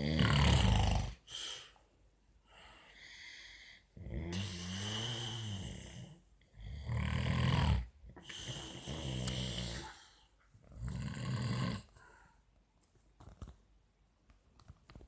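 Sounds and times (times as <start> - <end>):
man snoring: 0.0 - 1.6, 4.0 - 12.0.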